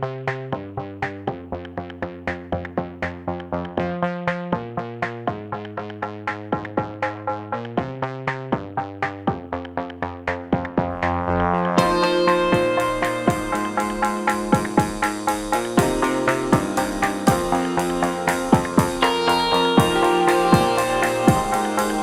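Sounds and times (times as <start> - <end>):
plucked note melody: 10.5 - 22.0.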